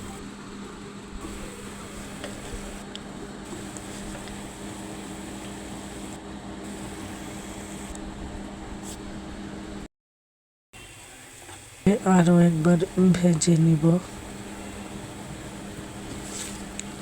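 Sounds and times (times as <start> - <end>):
steady low hum: 0.0 - 9.9, 11.8 - 17.0
batter frying in oil: 10.8 - 17.0.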